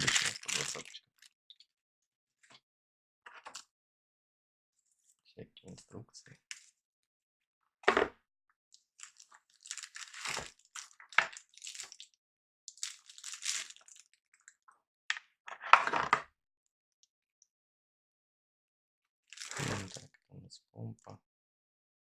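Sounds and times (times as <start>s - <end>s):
packaging rustling and crinkling: 9.1s - 10.6s.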